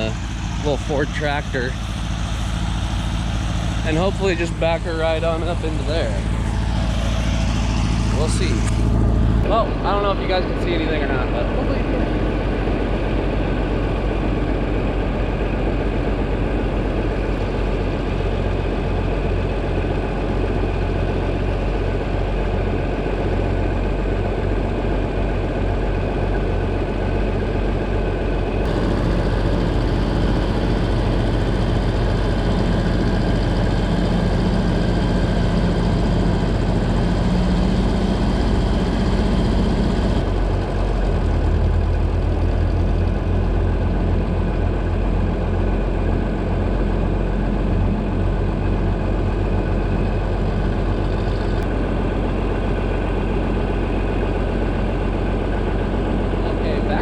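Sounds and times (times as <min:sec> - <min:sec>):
tractor engine running: 0:00.0 - 0:57.0.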